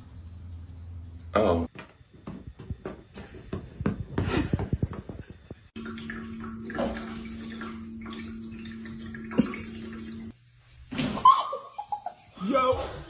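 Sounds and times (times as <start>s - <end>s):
water running into a tub: 4.2s - 10.3s
water splashing: 5.7s - 10.3s.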